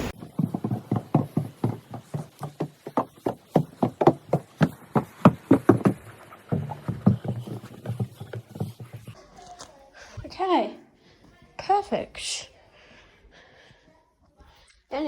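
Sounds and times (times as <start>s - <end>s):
quick footsteps on hard floor: 0.0s - 9.2s.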